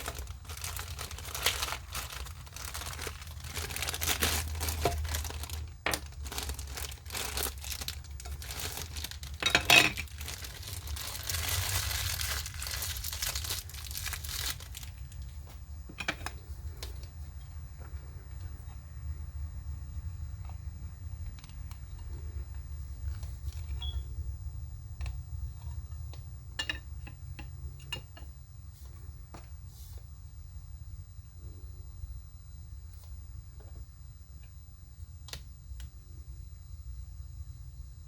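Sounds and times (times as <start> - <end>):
packaging crinkling and rustling: 0.0 - 18.7.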